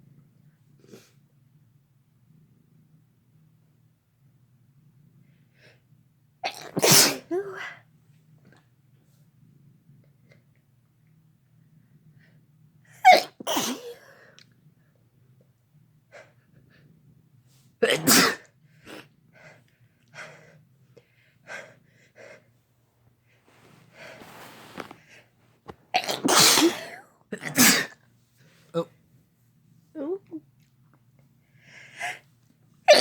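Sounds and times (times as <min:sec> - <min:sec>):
person sneezing: 0:06.5 - 0:07.4, 0:17.8 - 0:18.5, 0:26.0 - 0:28.0
breathing: 0:31.4 - 0:32.2.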